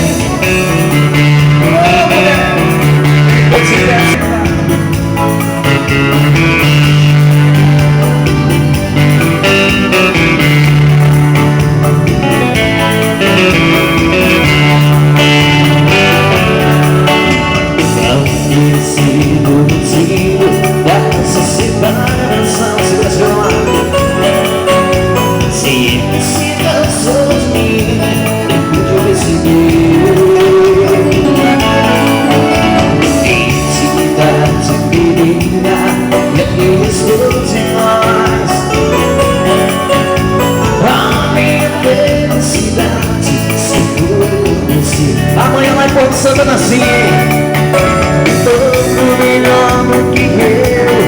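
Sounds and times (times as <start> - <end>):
live dance band playing: 0.0 - 51.0.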